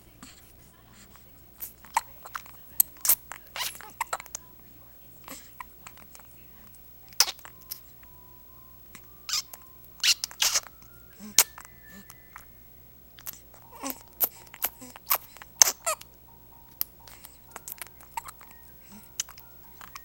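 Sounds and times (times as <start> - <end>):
person hiccuping: 9.3 - 11.8, 17.8 - 18.6.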